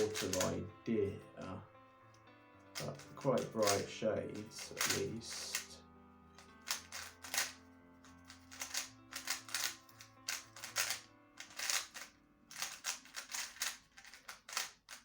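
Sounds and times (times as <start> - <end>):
speedcube layers clicking: 0.0 - 0.6, 4.6 - 5.7, 6.6 - 7.6, 8.2 - 15.0
soft background music: 0.0 - 15.0.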